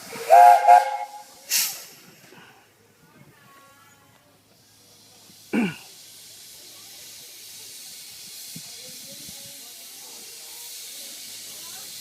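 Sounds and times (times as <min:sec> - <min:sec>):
steam locomotive hissing: 0:00.0 - 0:12.0.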